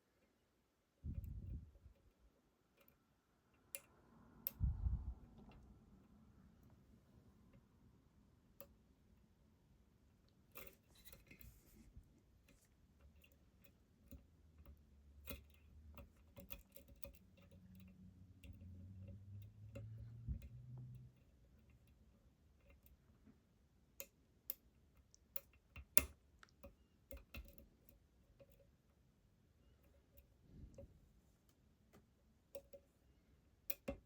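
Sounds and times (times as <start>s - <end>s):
soft low hum: 1.0s - 16.4s.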